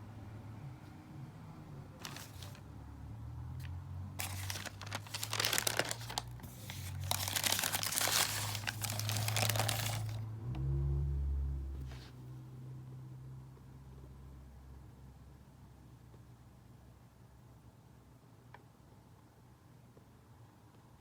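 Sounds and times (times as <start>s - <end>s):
paper wrapping crinkling: 2.0s - 2.6s, 4.2s - 10.2s.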